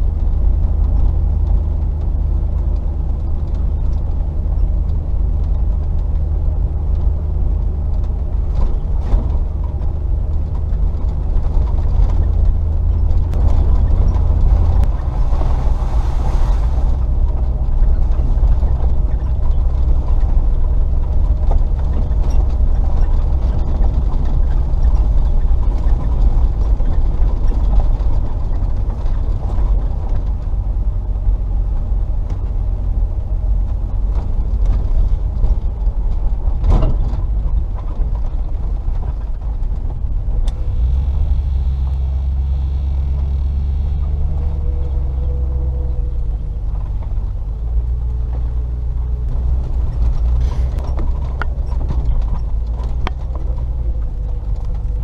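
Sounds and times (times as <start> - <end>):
car engine running at low revs: 0.0 - 55.0
knocks and rattles: 49.3 - 55.0.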